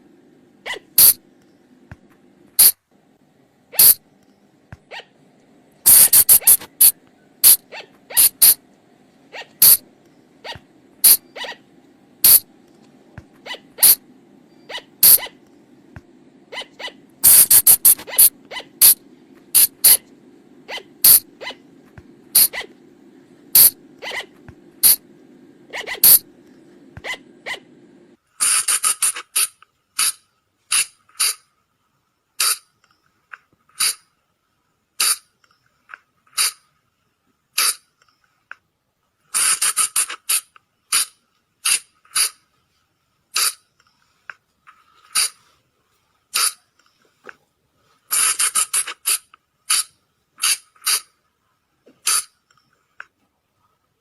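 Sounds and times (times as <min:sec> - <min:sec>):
colugo shrill calls: 0:03.8 - 0:04.0.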